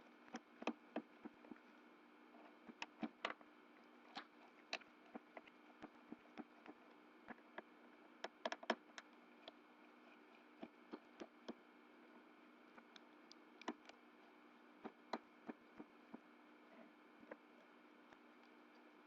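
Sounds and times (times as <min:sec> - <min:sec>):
faint steady hum: 0:00.0 - 0:19.0
light clicks and taps: 0:02.6 - 0:09.6.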